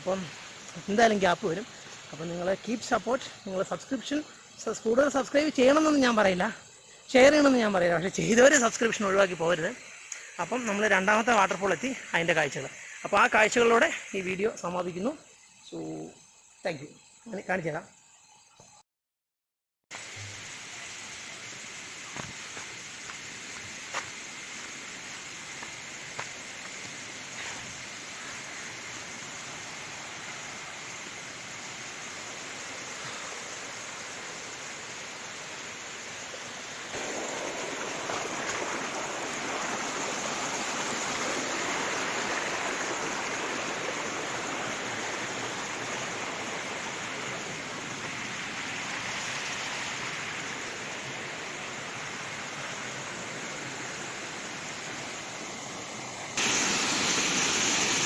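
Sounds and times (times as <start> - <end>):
waterfall rushing and splashing: 20.0 - 58.0.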